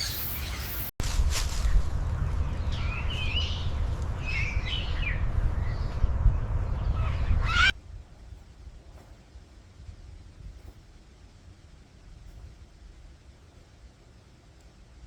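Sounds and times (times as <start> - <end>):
steady low rumble: 1.5 - 15.0
wavering bird calls: 6.7 - 9.6.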